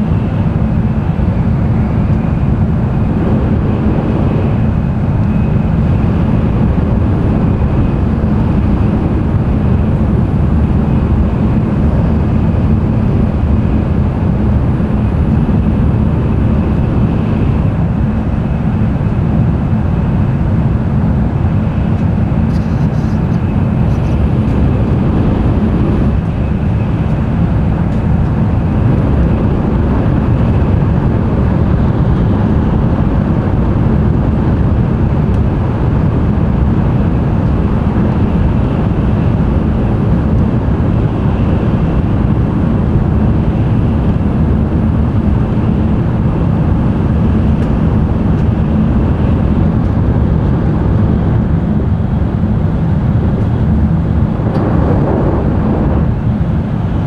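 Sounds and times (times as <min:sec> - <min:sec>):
faint high whine: 0:00.0 - 0:08.1
train cabin rumble: 0:00.0 - 0:57.0.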